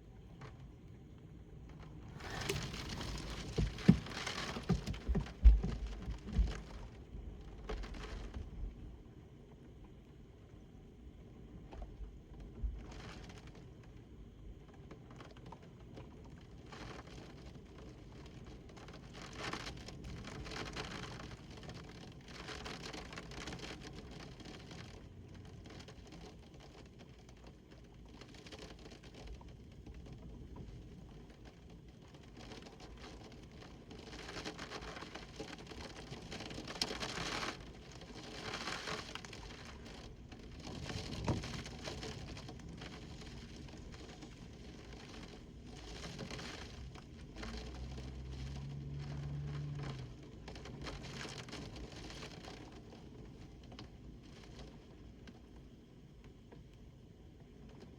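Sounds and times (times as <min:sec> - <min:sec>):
hiss of falling precipitation: 0:32.7 - 0:55.6.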